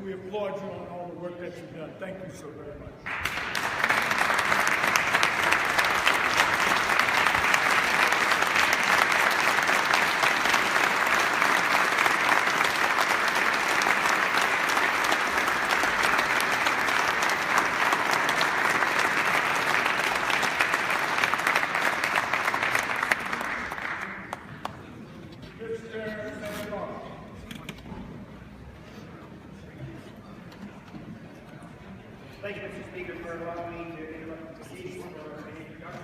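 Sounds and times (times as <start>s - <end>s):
audience applauding: 3.1s - 24.9s.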